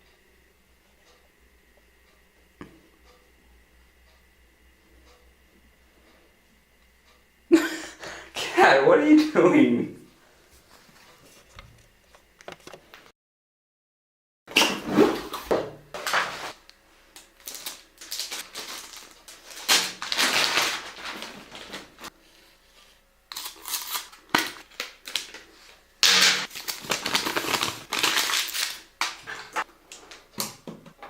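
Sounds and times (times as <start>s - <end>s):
cardboard and plastic rustling: 16.0s - 16.6s, 17.3s - 22.1s, 26.5s - 30.8s.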